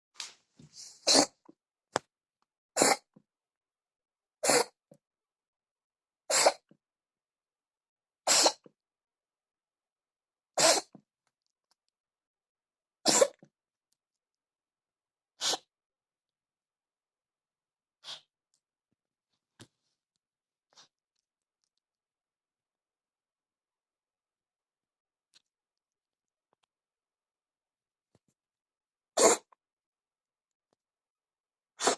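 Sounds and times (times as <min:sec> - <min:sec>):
cat sneezing: 0:00.8 - 0:01.5, 0:02.8 - 0:03.1, 0:04.4 - 0:04.8, 0:06.3 - 0:06.8, 0:08.3 - 0:08.7, 0:10.6 - 0:11.0, 0:13.0 - 0:13.5, 0:15.4 - 0:15.7, 0:18.0 - 0:18.3, 0:29.2 - 0:29.6.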